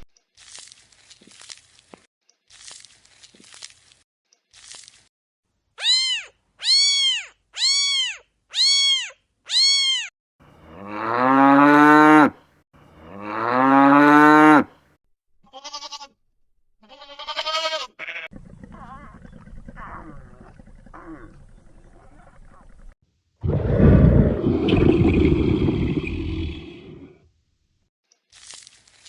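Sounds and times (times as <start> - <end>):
cow mooing: 10.6 - 12.4, 13.0 - 14.7
wavering bleats: 16.8 - 19.1.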